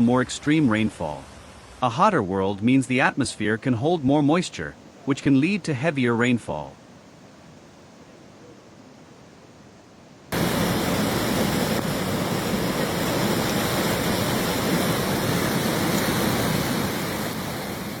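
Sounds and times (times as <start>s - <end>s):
rushing floodwater: 10.3s - 18.0s.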